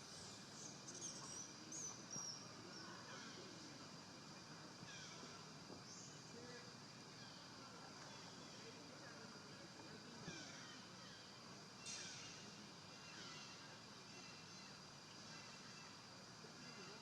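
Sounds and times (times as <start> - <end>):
quiet steady hiss: 0.0 - 17.0.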